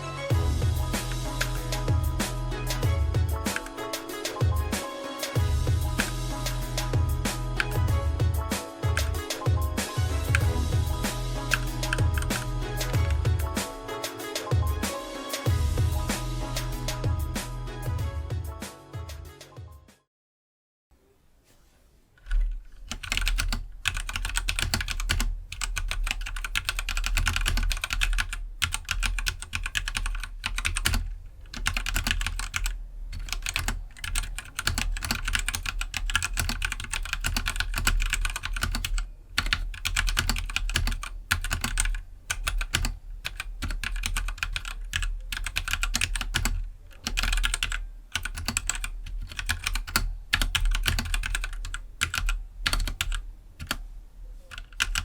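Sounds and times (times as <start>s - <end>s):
typing on mechanical keyboard: 11.5s - 13.2s, 22.2s - 53.8s, 54.5s - 55.0s.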